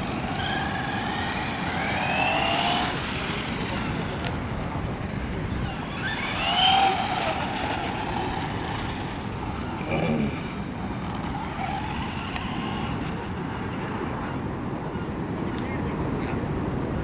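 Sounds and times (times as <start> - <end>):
toy car electric motor whining: 0.0 - 4.5, 5.5 - 9.8, 11.1 - 13.3.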